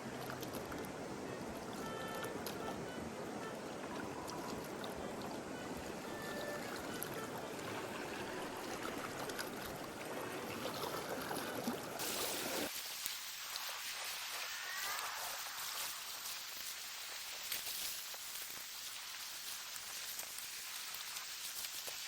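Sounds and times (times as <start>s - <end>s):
rushing water: 0.0s - 22.0s
thin high hiss: 12.0s - 22.0s.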